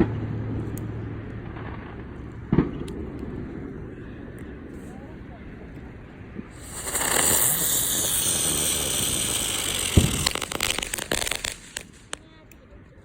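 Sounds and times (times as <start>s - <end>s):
firework crackles: 6.4s - 12.5s
firework hissing sparks: 6.5s - 12.2s.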